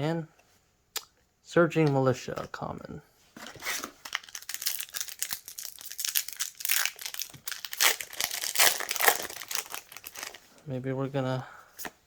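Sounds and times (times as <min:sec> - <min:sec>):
plastic wrapper crinkling and tearing: 0:03.6 - 0:10.5.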